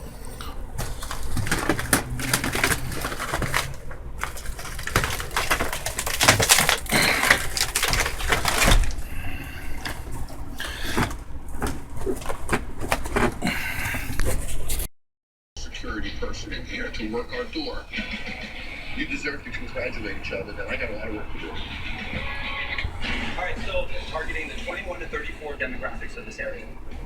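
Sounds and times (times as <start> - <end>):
panelling cracking and crunching: 0.0 - 14.9.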